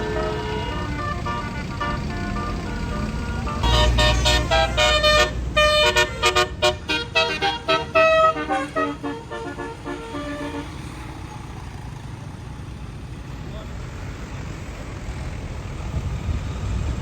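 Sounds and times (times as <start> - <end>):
bus horn playing melody: 0.0 - 11.3.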